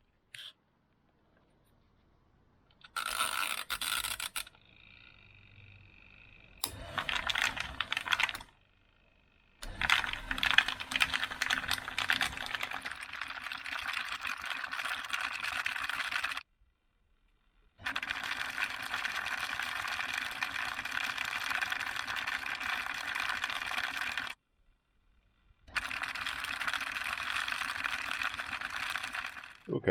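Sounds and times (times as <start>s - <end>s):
rotary tumbler clicking rattle: 2.8s - 8.7s, 9.4s - 16.5s, 17.8s - 24.4s, 25.7s - 29.7s.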